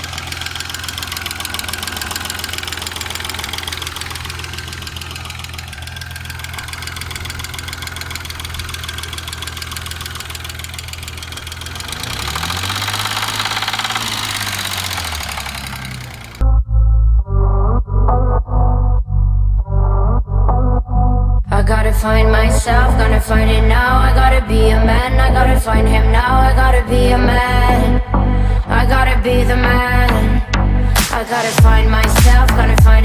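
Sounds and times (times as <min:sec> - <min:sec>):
engine running with knock: 0:00.0 - 0:16.4, 0:31.0 - 0:33.0
loud music: 0:30.1 - 0:33.0.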